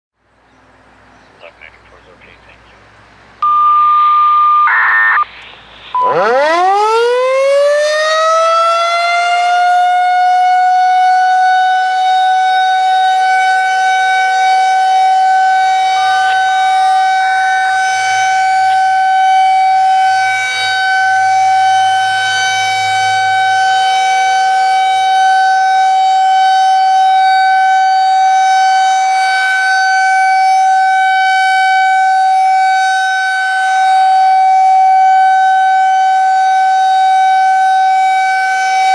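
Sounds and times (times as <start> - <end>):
short electronic tone: 3.4 - 6.2
warbling data burst: 3.4 - 6.8, 15.8 - 17.5
rotating siren wailing: 3.4 - 38.9.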